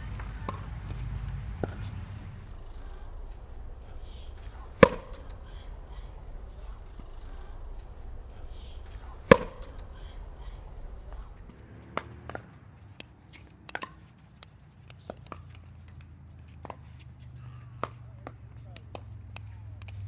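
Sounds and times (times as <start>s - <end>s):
paddle striking plastic ball: 0.0s - 2.6s, 4.8s - 5.2s, 9.3s - 9.8s, 11.4s - 20.0s
faint sharp pops and clicks: 17.8s - 20.0s.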